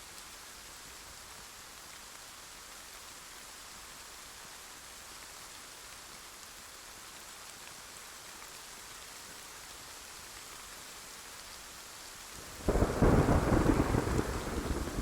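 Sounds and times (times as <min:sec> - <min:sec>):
steady rain hiss: 0:00.0 - 0:15.0
thunder clap rumbling: 0:12.6 - 0:15.0.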